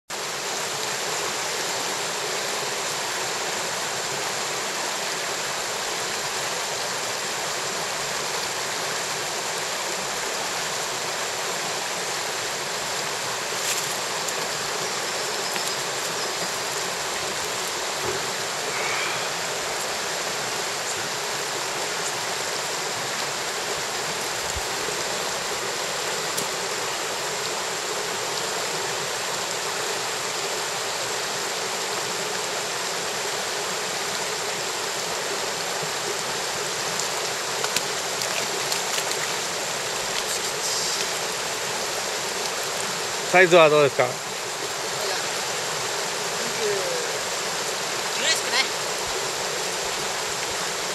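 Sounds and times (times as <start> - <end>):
stream water running over rocks: 0.1 - 50.9.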